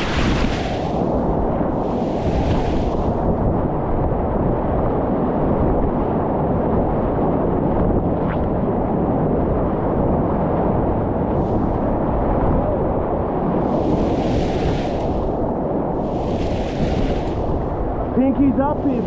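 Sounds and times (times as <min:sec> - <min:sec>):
water splashing hiss: 0:13.7 - 0:15.2.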